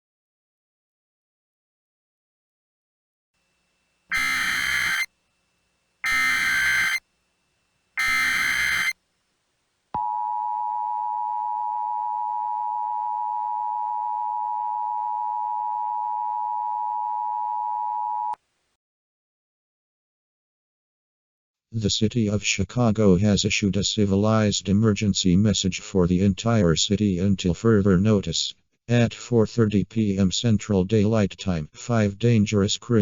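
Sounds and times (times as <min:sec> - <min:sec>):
screechy digital data bursts: 0:04.1 - 0:05.1, 0:06.0 - 0:07.0, 0:08.0 - 0:09.0
two-pitch electronic alert tone: 0:04.1 - 0:05.1, 0:06.0 - 0:07.0, 0:08.0 - 0:08.9.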